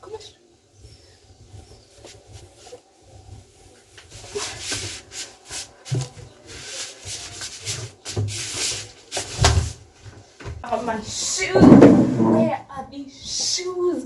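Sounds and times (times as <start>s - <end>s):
fabric rustling: 1.4s - 10.4s.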